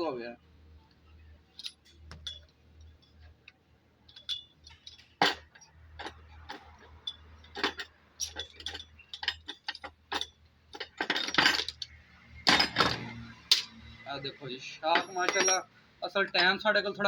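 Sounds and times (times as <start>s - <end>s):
metal tools clinking on workbench: 4.1s - 13.8s, 14.8s - 16.6s.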